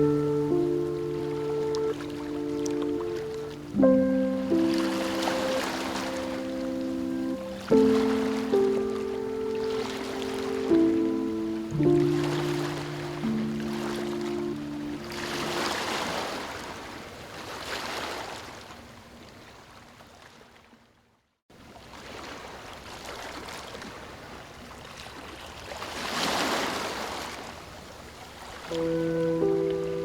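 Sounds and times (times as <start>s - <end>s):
soft sustained music notes: 0.0s - 16.2s, 28.7s - 30.0s
ocean surf washing in: 0.0s - 18.2s.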